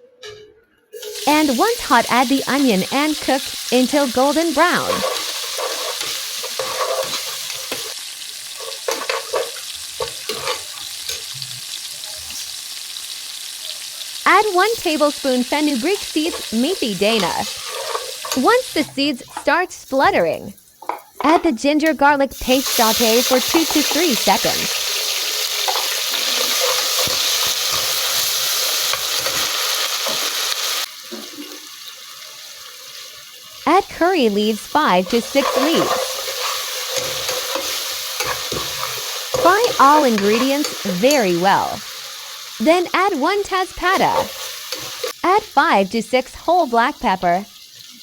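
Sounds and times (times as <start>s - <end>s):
onions sizzling in oil: 1.0s - 48.0s
spoon scraping a pan: 4.6s - 8.0s, 8.6s - 11.4s, 16.2s - 19.6s, 22.6s - 30.5s, 34.4s - 41.6s, 43.1s - 45.2s.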